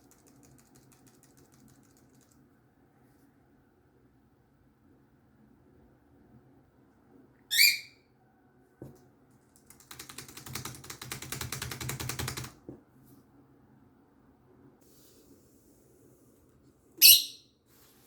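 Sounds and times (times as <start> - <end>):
bird pecking keyboard keys: 0.0 - 2.4, 9.6 - 12.6
lovebird chirp: 7.5 - 8.0, 17.0 - 17.6.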